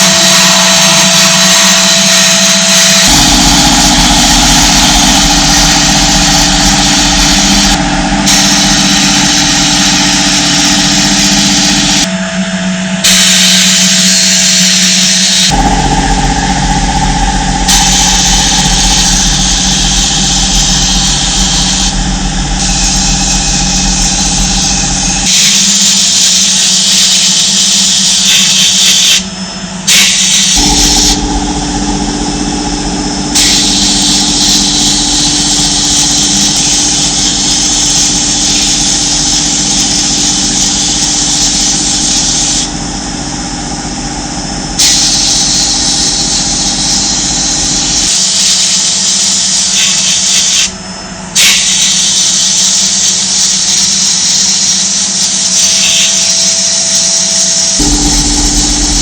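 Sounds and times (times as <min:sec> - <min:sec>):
steady machine hum: 0:00.0 - 0:59.0
compressed air gun hissing: 0:00.2 - 0:12.1, 0:29.9 - 0:31.2, 0:33.4 - 0:42.7, 0:44.8 - 0:50.7.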